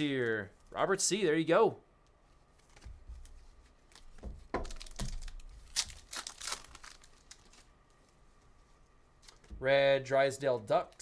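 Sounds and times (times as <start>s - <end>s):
wrapper tearing and crinkling: 3.9s - 7.7s.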